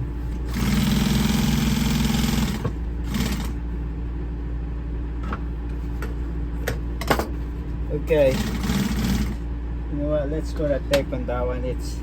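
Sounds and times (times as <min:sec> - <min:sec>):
low hum: 0:00.0 - 0:01.5, 0:02.4 - 0:12.0
sewing machine stitching: 0:00.5 - 0:03.6, 0:08.3 - 0:09.4.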